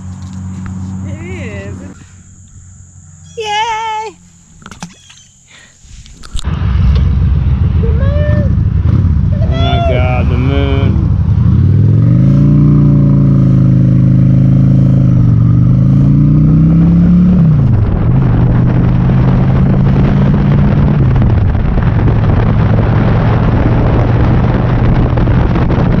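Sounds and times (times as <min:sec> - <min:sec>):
motorcycle engine: 0:00.0 - 0:05.5, 0:06.2 - 0:26.0
wind on microphone: 0:07.6 - 0:26.0.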